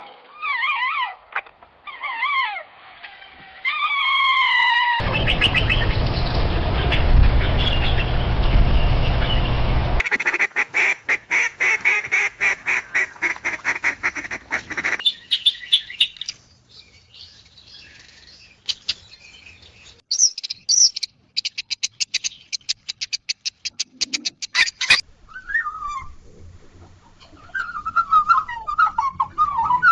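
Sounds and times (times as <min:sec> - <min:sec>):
bird calls: 0:14.8 - 0:26.2
bird chirps: 0:15.0 - 0:25.9.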